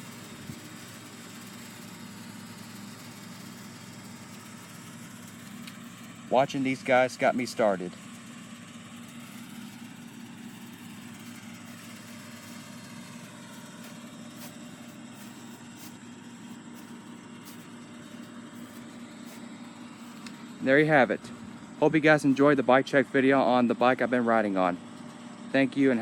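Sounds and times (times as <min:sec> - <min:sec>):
steady low hum: 0:05.5 - 0:24.9.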